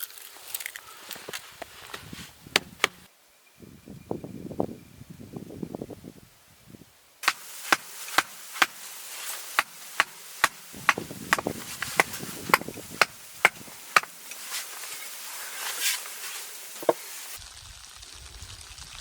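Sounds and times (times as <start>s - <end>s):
blade chopping: 2.5s - 3.1s, 7.2s - 8.8s, 9.5s - 14.2s.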